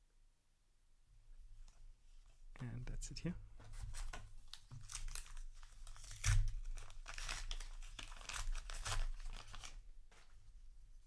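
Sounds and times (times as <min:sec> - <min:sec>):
foil wrapper crinkling: 0:04.0 - 0:09.8.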